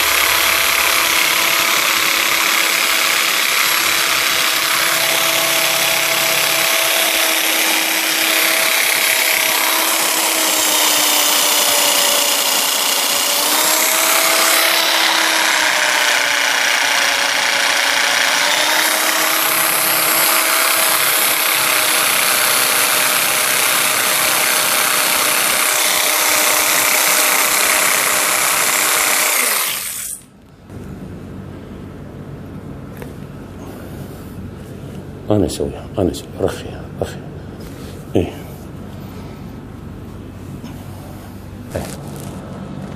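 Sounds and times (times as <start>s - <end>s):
small electric motor whining: 0.0s - 30.3s.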